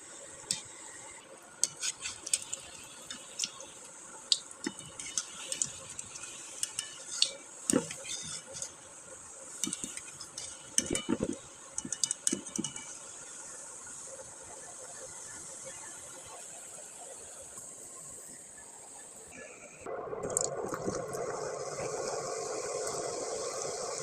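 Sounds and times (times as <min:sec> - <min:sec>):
metal spoon stirring in cookware: 0:01.6 - 0:08.9, 0:09.6 - 0:13.0.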